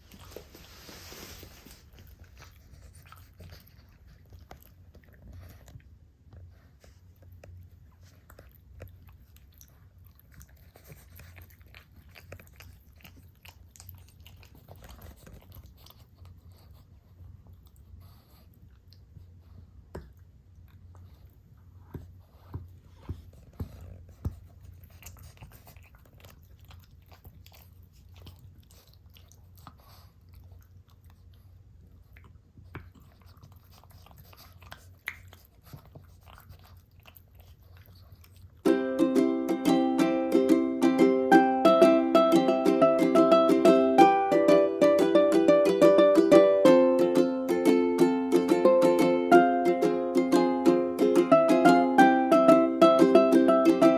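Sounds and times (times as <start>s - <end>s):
dog chewing: 0.0s - 39.2s.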